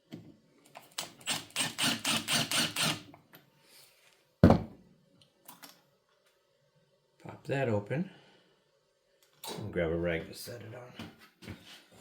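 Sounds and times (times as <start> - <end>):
loud thunk: 4.4 - 4.7.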